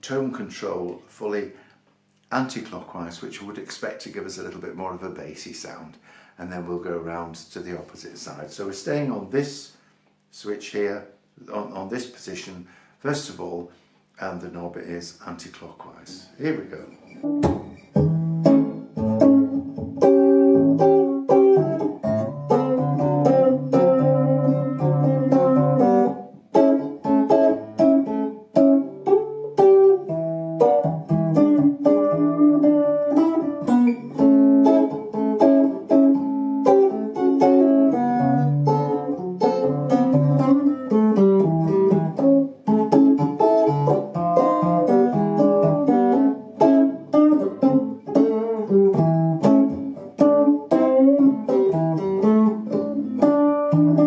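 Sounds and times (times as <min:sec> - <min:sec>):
electric guitar playing: 0:17.0 - 0:54.0.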